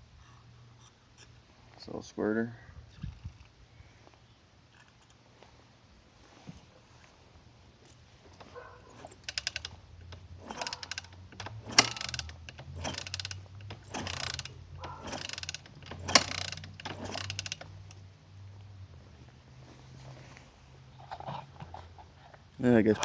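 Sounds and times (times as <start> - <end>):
socket ratchet clicking: 9.0 - 18.0.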